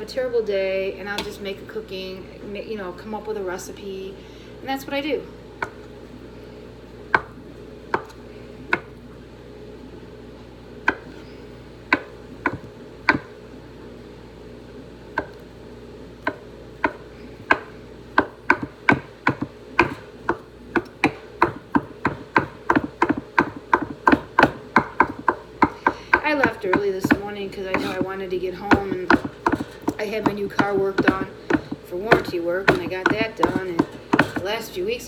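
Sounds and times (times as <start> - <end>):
knife chopping on cutting board: 7.1 - 8.9, 10.9 - 11.2, 11.9 - 13.3, 15.2 - 15.4, 16.2 - 34.6.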